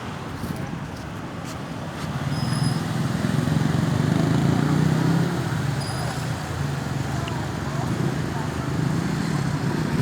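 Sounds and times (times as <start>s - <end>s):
vehicle engine passing by: 3.0s - 6.2s.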